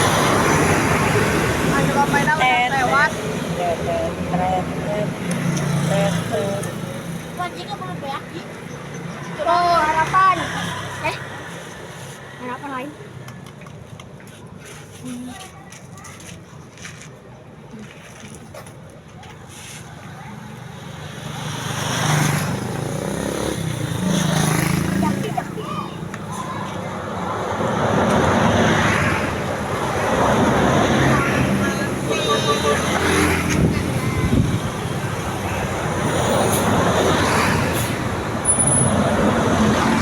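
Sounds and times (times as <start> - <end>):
road traffic passing: 0.0 - 40.0
bus engine approaching: 22.5 - 40.0.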